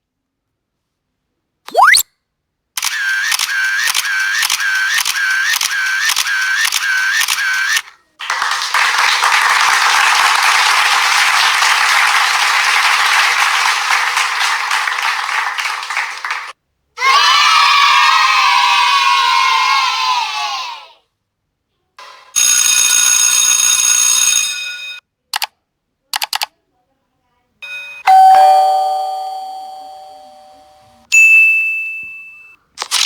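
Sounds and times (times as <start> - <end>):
rising whistle: 1.7 - 2.0.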